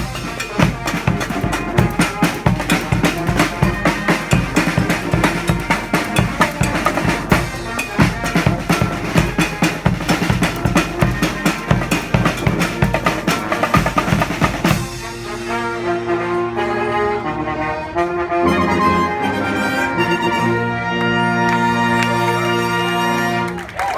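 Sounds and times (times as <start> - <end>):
marching drum beat: 0.0 - 15.4
marching band horns: 0.0 - 23.9.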